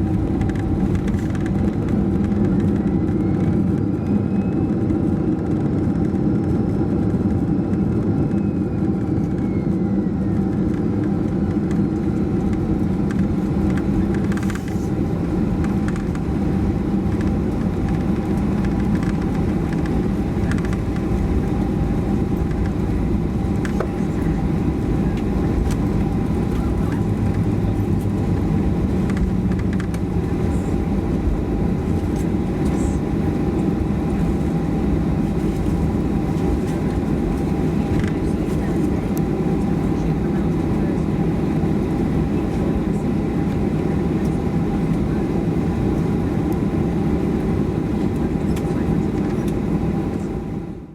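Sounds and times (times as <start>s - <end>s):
jet engines droning: 0.0s - 50.9s
low cabin rumble: 0.0s - 50.9s
steady whine tones: 0.0s - 50.9s.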